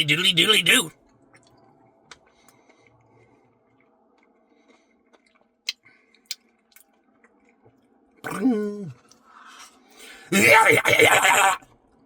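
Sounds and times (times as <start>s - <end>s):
person chewing: 1.4s - 7.6s.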